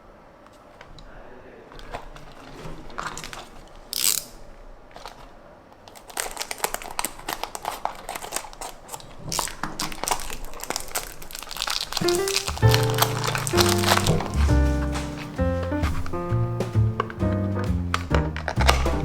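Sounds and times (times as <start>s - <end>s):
small clicks and crackles: 1.7s - 15.4s
packaging crinkling and rustling: 1.7s - 16.0s.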